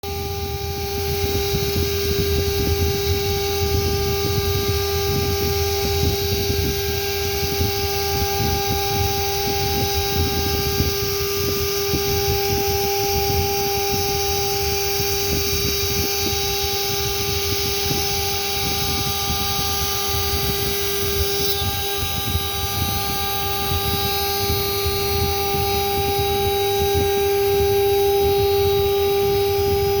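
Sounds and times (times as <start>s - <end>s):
router spindle whining: 0.0s - 30.0s.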